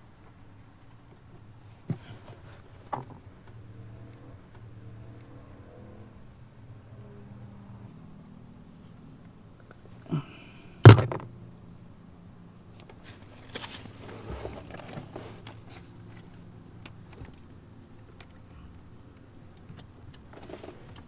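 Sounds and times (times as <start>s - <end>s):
plastic parts knocking: 10.9s - 11.3s.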